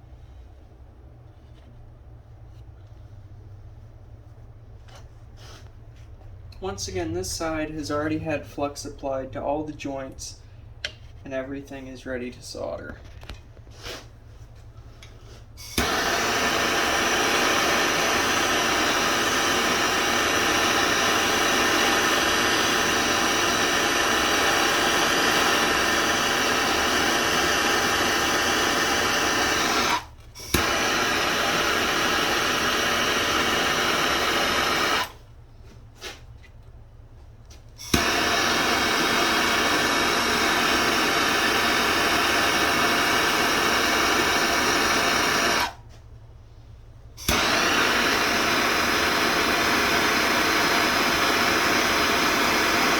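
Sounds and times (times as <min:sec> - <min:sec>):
gas torch flame hissing: 0:15.4 - 0:35.3, 0:37.8 - 0:45.8, 0:47.2 - 0:52.9
torch ignition click: 0:15.6 - 0:35.2, 0:37.8 - 0:45.8, 0:47.2 - 0:52.9.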